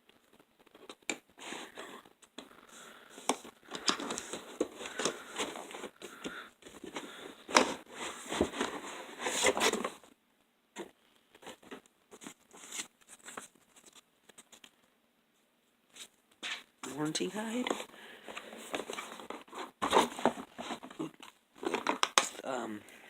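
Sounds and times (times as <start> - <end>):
packaging crinkling and tearing: 21.6 - 22.4.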